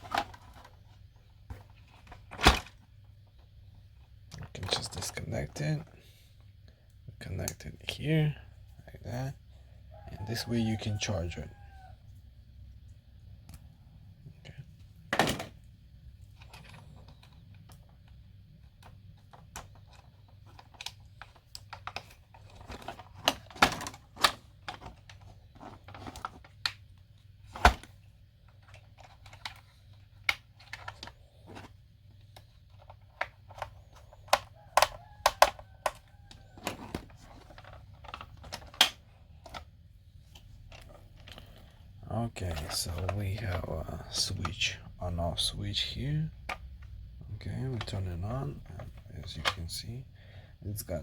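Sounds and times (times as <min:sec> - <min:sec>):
plastic toy parts clicking and knocking: 0:18.7 - 0:26.9, 0:27.5 - 0:39.7.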